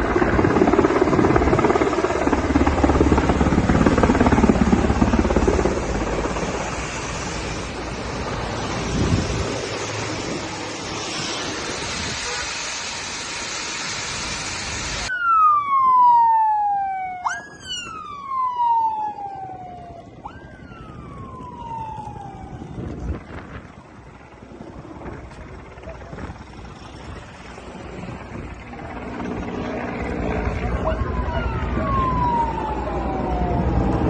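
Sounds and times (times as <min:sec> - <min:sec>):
emergency siren wailing: 0:00.0 - 0:06.7, 0:15.0 - 0:24.1, 0:28.5 - 0:34.0.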